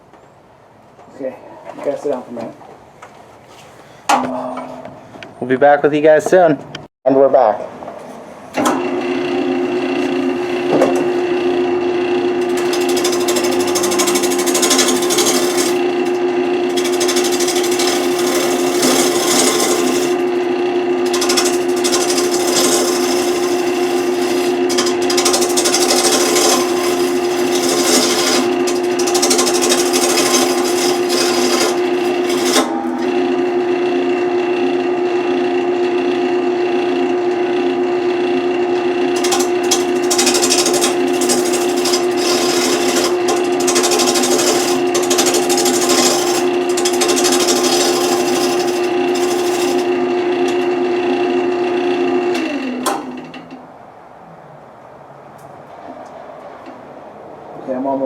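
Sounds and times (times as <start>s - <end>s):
wood lathe motor hum: 8.6s - 53.4s
turning tool scraping wood: 9.4s - 33.3s, 39.1s - 52.6s.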